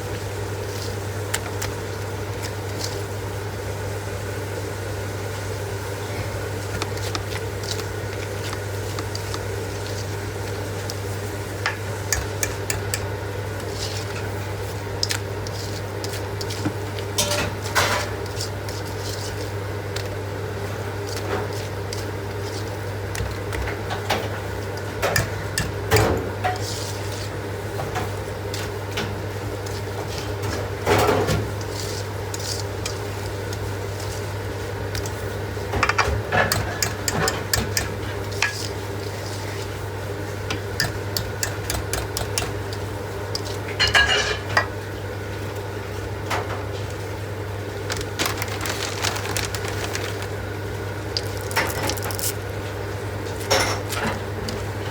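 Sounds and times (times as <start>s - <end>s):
dishes clinking and clattering: 43.8s - 44.7s.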